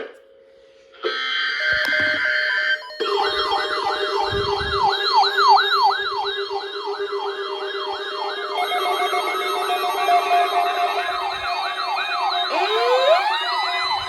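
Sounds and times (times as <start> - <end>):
electronic siren yelping: 1.6 - 14.0.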